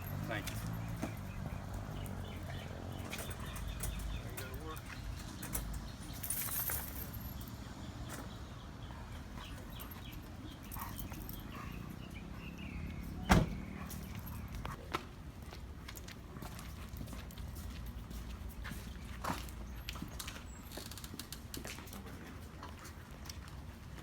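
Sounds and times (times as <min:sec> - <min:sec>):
leash jingle: 0:00.0 - 0:14.8, 0:16.4 - 0:21.9
loud sharp thump: 0:13.3 - 0:13.6.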